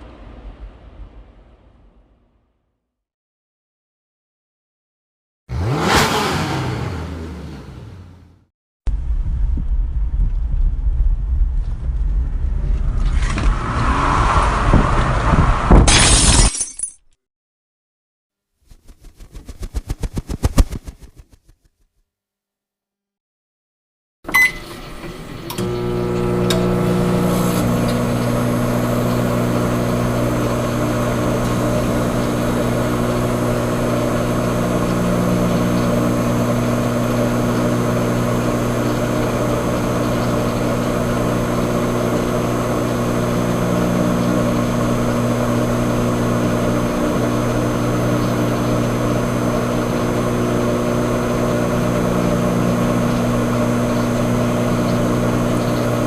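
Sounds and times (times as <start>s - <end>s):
electrical machine hum: 24.3s - 56.0s.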